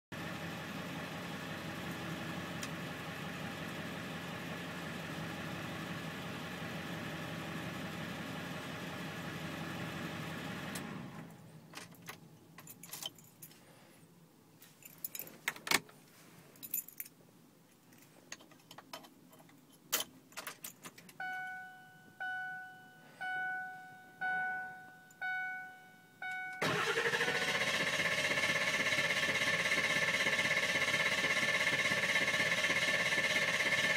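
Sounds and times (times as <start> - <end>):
diesel engine running: 0.2 - 11.3, 26.6 - 33.9
keys jingling and clicking: 11.8 - 13.6, 14.6 - 15.7, 16.6 - 17.2, 17.8 - 21.2
dashboard chime: 21.2 - 27.4
starter cranking engine: 26.6 - 33.9.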